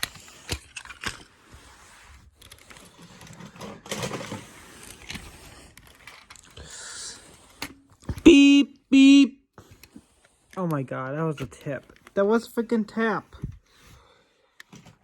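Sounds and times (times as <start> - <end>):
plastic toy cars rattling: 0.0 - 8.1.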